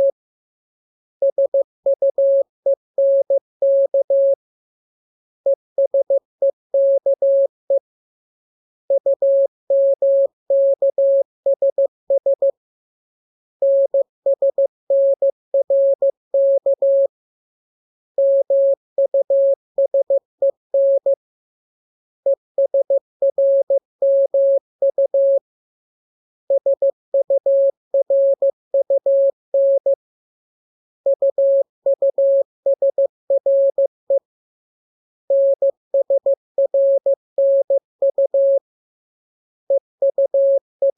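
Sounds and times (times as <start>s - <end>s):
morse code beeps: 3.0s - 4.4s, 26.6s - 30.0s, 31.1s - 34.2s, 35.3s - 38.6s, 39.7s - 40.9s.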